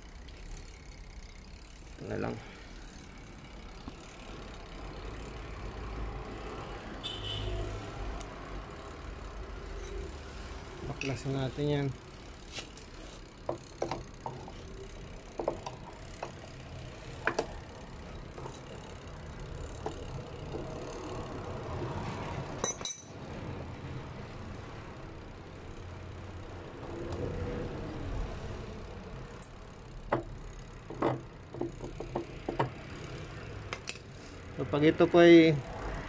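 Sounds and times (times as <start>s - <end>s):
metal tools clinking and knocking: 22.6s - 23.2s.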